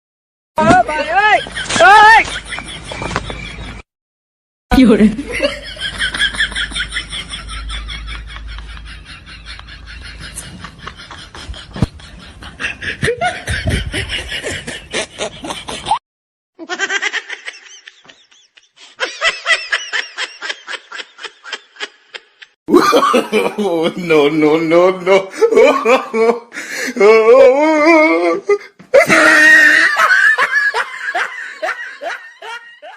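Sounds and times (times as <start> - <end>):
high-pitched laughter: 16.6 - 23.6.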